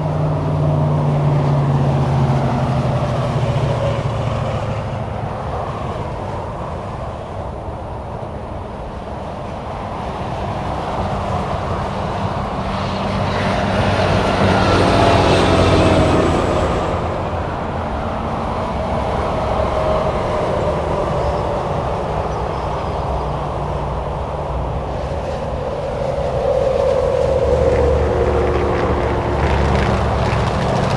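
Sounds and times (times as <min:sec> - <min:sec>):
highway traffic: 0:00.0 - 0:30.9
vehicle passing close: 0:10.5 - 0:30.9.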